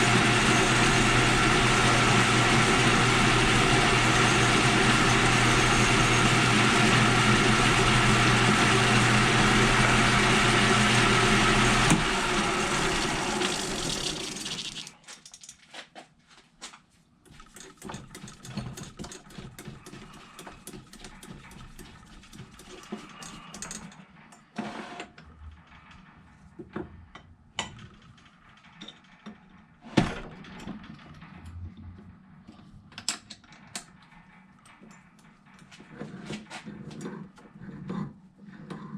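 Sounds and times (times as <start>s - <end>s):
power tool motor running: 0.0s - 14.8s
small metal parts clicking: 15.0s - 15.7s.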